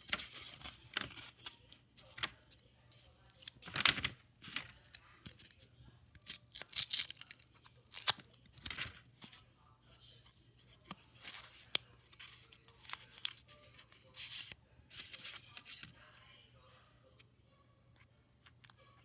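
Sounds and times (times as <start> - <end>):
paper crinkling and tearing: 0.0 - 2.3, 3.3 - 9.4, 10.6 - 15.9.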